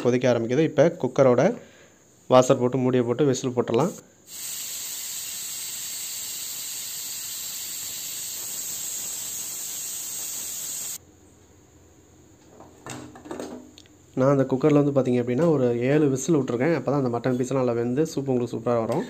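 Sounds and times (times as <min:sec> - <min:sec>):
pressure cooker whistle hissing: 0:04.3 - 0:11.0.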